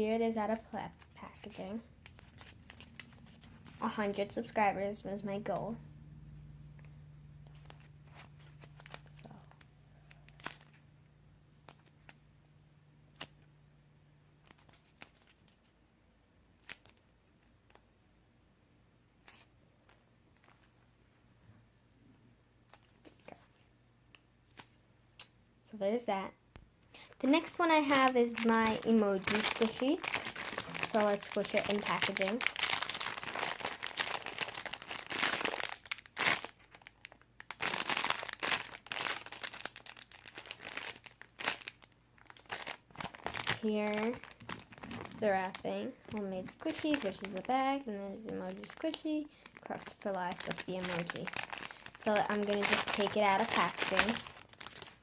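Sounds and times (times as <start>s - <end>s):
faint low hum: 0.0s - 55.0s
plastic bag crinkling: 0.3s - 4.4s, 7.4s - 10.8s, 14.4s - 15.6s, 27.0s - 55.0s.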